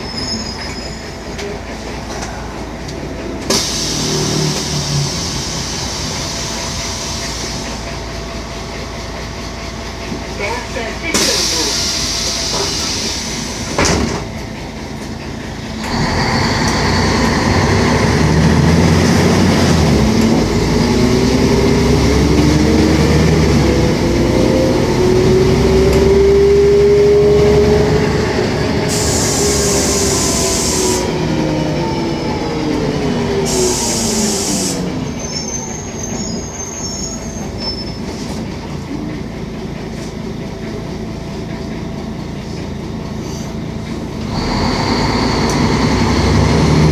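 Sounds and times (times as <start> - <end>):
bus engine whining: 0.0 - 46.9
thump: 13.8 - 14.2
air hisses: 28.9 - 31.1, 33.5 - 34.9.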